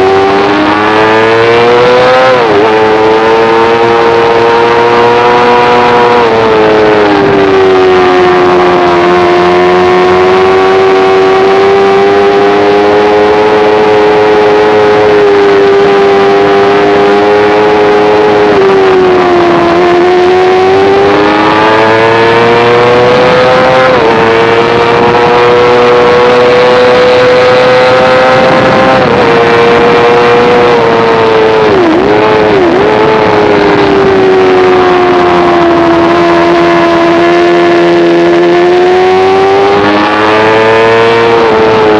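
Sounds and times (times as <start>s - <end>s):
motorcycle engine at high revs: 0.0s - 41.9s
wind rush: 15.0s - 41.9s.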